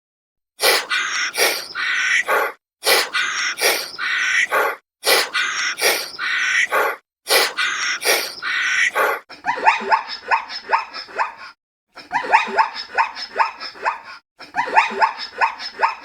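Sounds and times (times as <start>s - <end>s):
animal rasping calls: 0.6s - 9.2s
dog barking: 2.2s - 8.2s, 8.8s - 11.4s, 14.6s - 16.0s.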